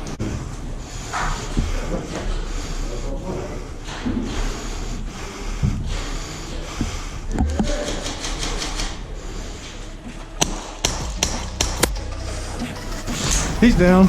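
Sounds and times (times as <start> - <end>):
dull thumps: 0.0 - 2.7.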